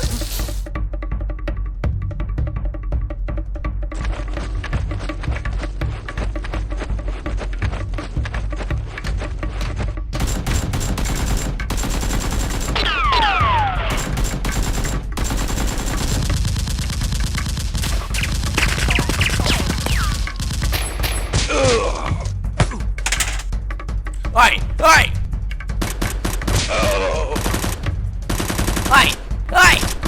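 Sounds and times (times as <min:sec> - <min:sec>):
automatic gunfire: 0:10.2 - 0:13.2, 0:13.9 - 0:21.1, 0:25.8 - 0:30.0.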